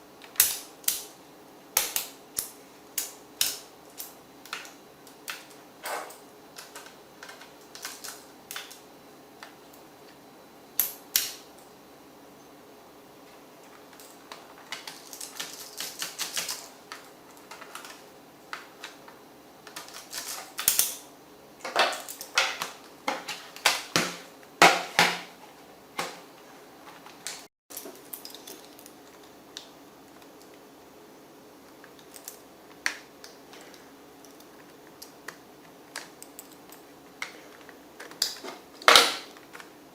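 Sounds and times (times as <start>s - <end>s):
clicks and scrapes of laptop parts: 13.7s - 19.0s.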